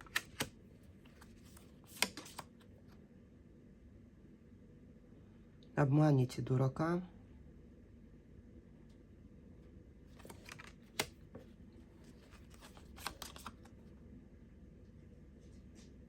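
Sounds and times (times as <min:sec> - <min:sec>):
cards swishing and tapping: 0:00.0 - 0:02.5, 0:10.2 - 0:13.7.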